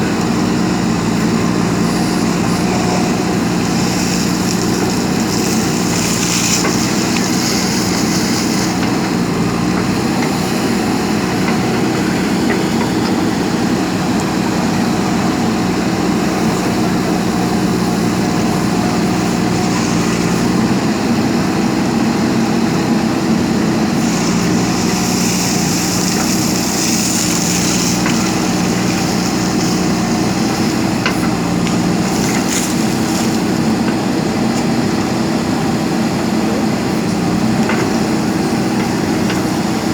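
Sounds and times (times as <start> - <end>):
diesel engine running: 0.0 - 39.9
loud hiss: 0.4 - 11.5, 24.0 - 33.8.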